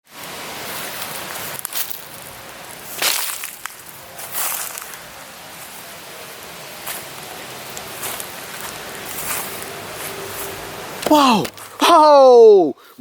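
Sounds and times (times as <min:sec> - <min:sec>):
brushing sweeps: 0:00.1 - 0:11.8
continuous rustling: 0:00.2 - 0:11.8.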